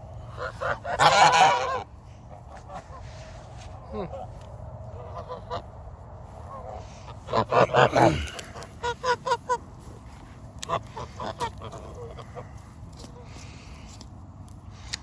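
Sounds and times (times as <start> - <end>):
geese honking: 0.2 - 3.3, 5.0 - 5.8, 6.4 - 13.7.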